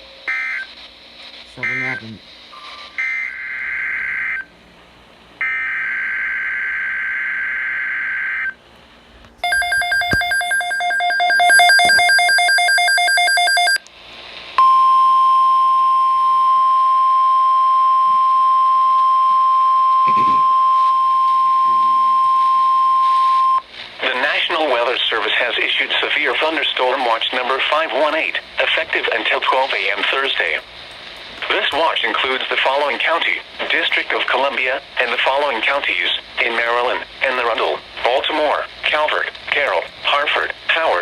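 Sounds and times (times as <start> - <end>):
steady high alarm tone: 9.4 - 13.8.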